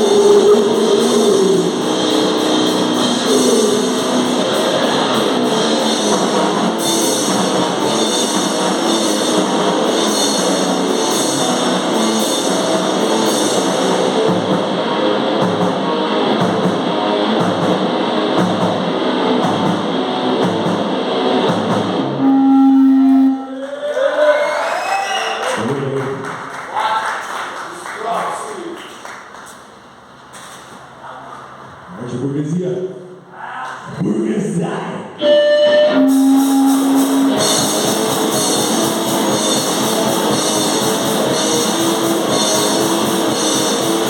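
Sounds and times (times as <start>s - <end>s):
drum kit: 0.0s - 23.4s, 35.2s - 44.0s
distorted guitar: 0.0s - 23.6s, 34.1s - 44.0s.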